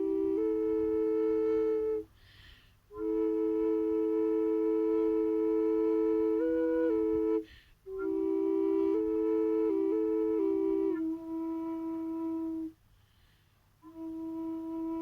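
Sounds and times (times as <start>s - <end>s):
drone flute playing slow tune: 0.0s - 2.1s, 2.9s - 12.8s, 13.8s - 15.0s
soft inhale: 2.1s - 2.9s, 7.4s - 7.9s, 12.8s - 13.8s.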